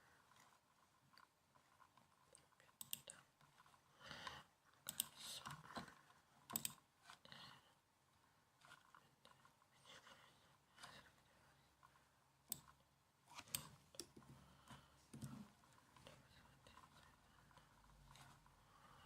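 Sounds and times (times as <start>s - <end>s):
laptop keyboard typing: 4.2s - 5.9s, 6.5s - 6.9s.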